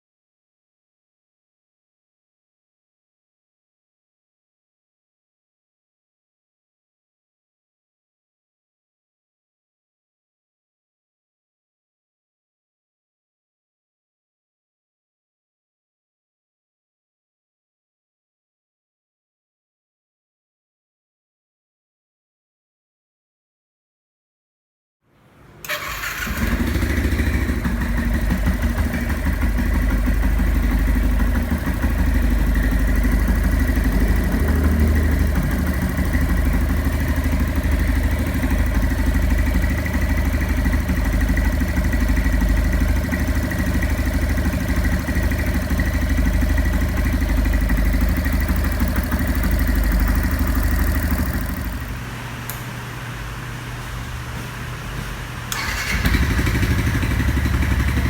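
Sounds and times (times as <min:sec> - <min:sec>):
motorcycle engine idling: 0:25.7 - 0:52.1, 0:55.6 - 0:58.0.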